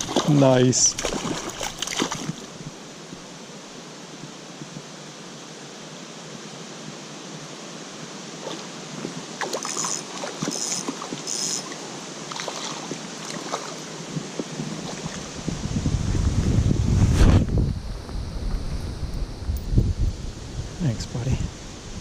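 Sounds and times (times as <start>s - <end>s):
splashes in water: 0.0s - 2.5s, 9.4s - 13.8s
creek running: 0.0s - 4.1s, 8.2s - 15.8s.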